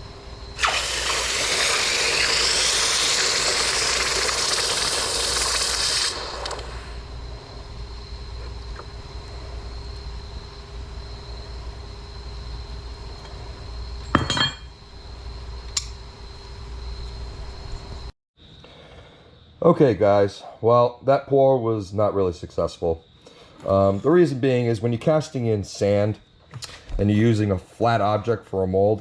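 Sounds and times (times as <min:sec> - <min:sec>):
furnace burner rushing: 0:00.6 - 0:07.3.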